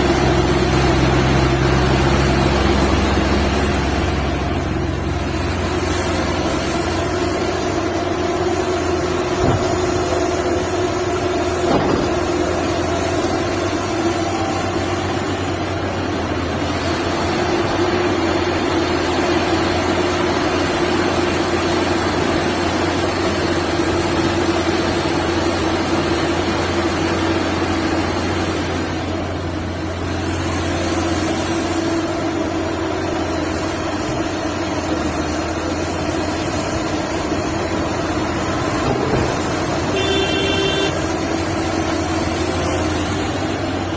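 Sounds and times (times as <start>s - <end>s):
excavator diesel engine droning: 0.0s - 43.9s.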